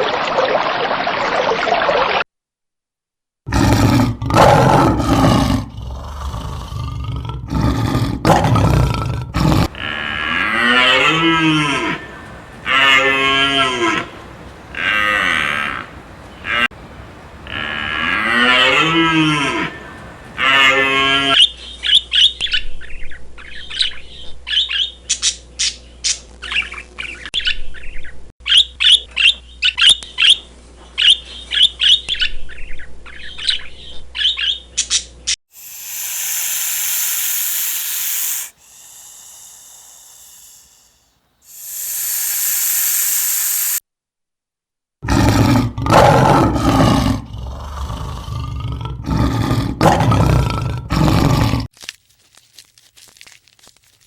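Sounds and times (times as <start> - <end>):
big cat roaring: 3.5 - 16.7, 45.0 - 51.7
cow mooing: 9.6 - 21.4
hissing noise: 35.5 - 43.8.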